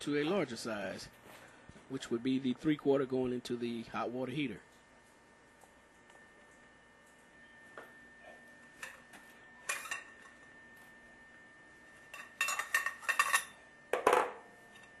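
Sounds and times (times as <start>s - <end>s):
metal tools clinking and clattering: 12.2s - 13.5s.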